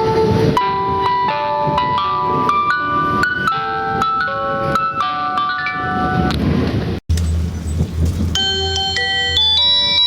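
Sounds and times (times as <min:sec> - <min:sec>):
bell-like chime melody over speakers: 0:08.4 - 0:10.0.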